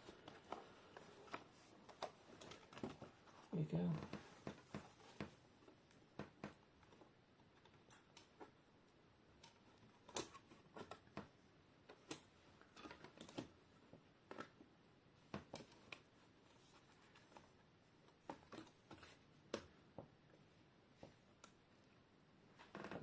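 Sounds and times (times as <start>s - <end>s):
laptop plastic parts clicking: 9.4s - 11.3s.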